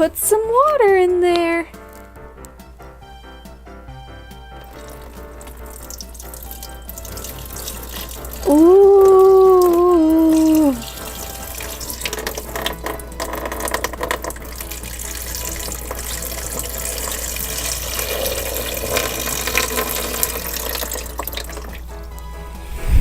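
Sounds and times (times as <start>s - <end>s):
water running into basin: 4.4s - 22.3s.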